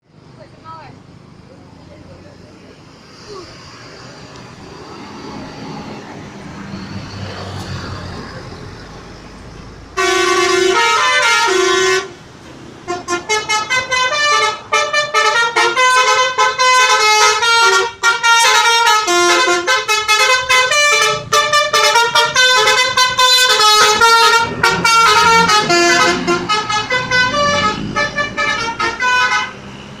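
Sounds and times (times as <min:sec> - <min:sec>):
bus horn playing a tune: 0:09.9 - 0:12.2, 0:12.8 - 0:29.6.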